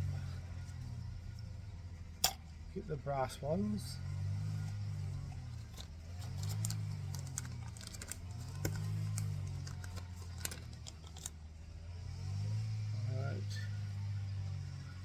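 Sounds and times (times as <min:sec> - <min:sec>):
metal screws clinking: 0:02.2 - 0:02.5, 0:05.5 - 0:11.4.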